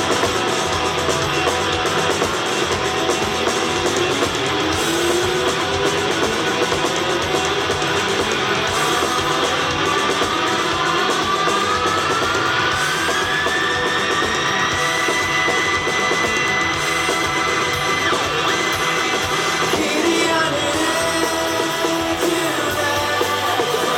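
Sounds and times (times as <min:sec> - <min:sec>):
rock band playing: 0:00.0 - 0:23.9.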